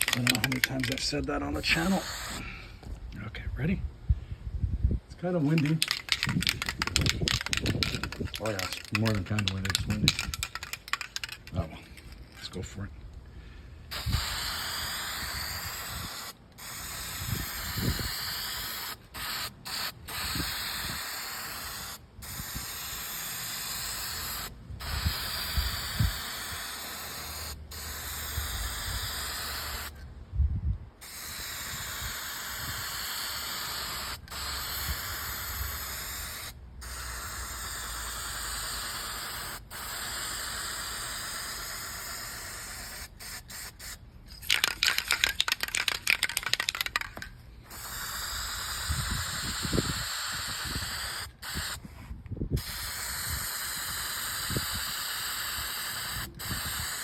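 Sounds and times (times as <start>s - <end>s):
aerosol spray can hissing: 0.0s - 2.5s, 5.4s - 12.2s, 13.9s - 30.0s, 31.0s - 51.8s, 52.6s - 57.0s
wind rumble on microphone: 3.0s - 5.2s, 17.1s - 18.3s, 30.2s - 31.0s, 48.6s - 50.9s, 51.6s - 53.5s.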